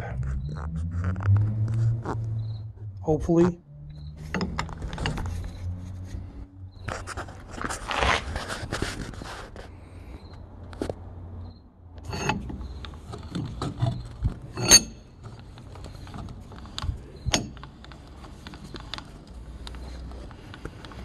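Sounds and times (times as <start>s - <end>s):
vise clicking and scraping: 3.9s - 9.7s, 12.0s - 21.0s.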